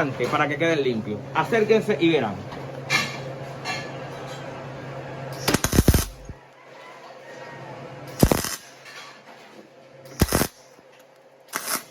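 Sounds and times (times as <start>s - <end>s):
welding arc crackle: 5.4s - 6.4s, 8.2s - 8.7s, 10.1s - 10.7s, 11.5s - 11.9s.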